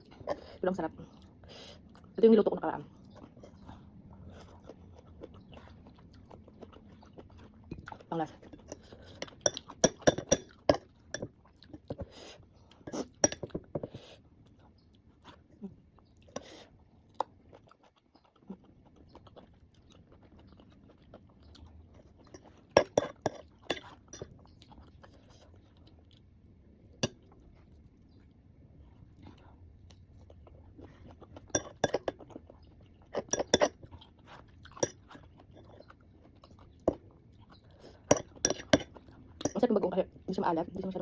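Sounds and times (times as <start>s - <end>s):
chewing and crunching: 0.0s - 40.4s
spoon clinking on dish: 9.2s - 11.3s, 12.9s - 13.6s, 22.3s - 24.4s, 31.5s - 32.1s, 33.2s - 33.7s, 38.1s - 39.6s.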